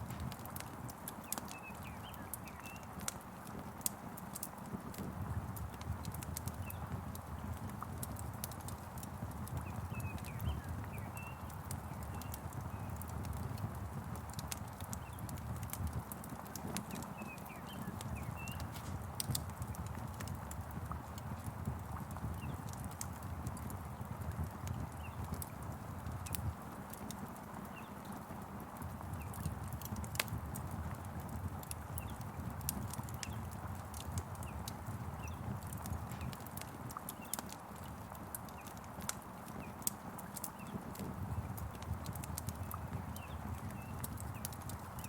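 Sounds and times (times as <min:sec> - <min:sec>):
log fire crackling and popping: 0:00.0 - 0:45.0
rain rumble and hiss: 0:00.0 - 0:45.0
bird chirps: 0:16.9 - 0:18.9.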